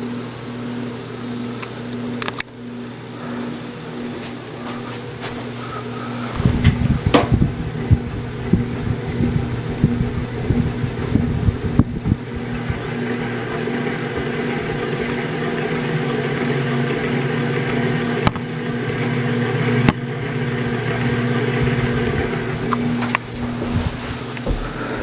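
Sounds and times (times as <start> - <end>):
ceiling fan motor hum: 0.0 - 25.0
low knocks: 21.6 - 25.0.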